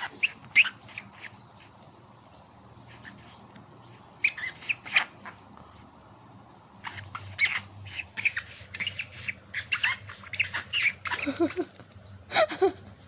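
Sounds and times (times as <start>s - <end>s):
bird calling: 2.9s - 5.4s, 6.8s - 11.7s.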